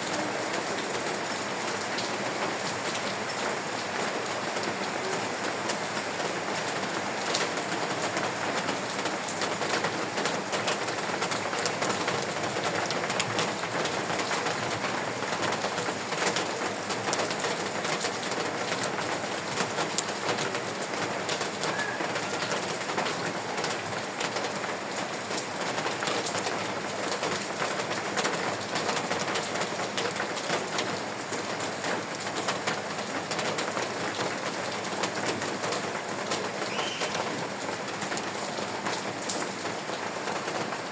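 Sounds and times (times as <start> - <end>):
steady rain falling: 0.0 - 40.9
raindrops ticking: 0.1 - 40.9
bird calling: 21.6 - 22.4, 36.6 - 37.4.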